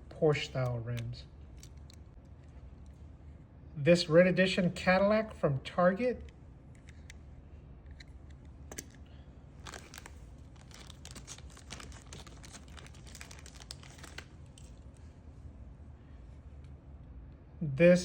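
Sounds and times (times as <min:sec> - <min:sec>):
low steady hum: 0:00.0 - 0:18.0
handling clicks and crinkling: 0:00.4 - 0:03.0, 0:06.2 - 0:15.1.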